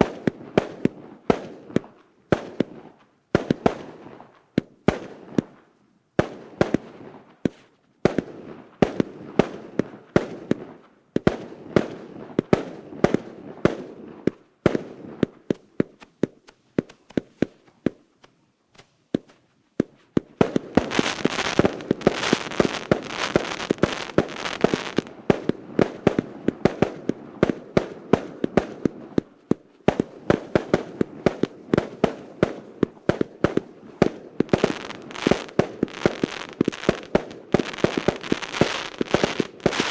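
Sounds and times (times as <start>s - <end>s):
loud crackling hiss: 16.0s - 25.1s, 34.4s - 39.9s.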